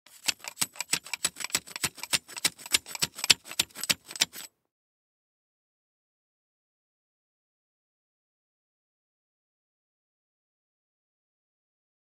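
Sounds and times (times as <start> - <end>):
ramrod striking inside barrel: 0.1 - 4.5.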